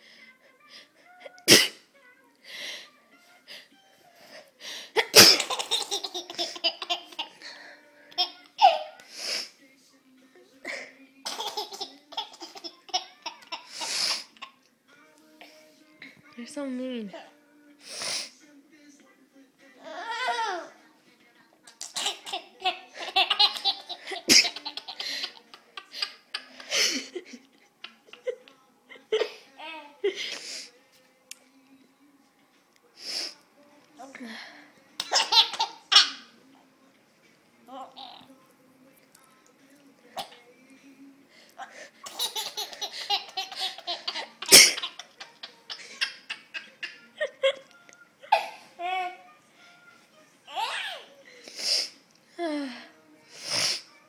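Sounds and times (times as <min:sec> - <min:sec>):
baby laughing: 0:05.0 - 0:07.4, 0:11.2 - 0:14.6, 0:21.8 - 0:28.5, 0:35.0 - 0:36.2, 0:42.0 - 0:49.2.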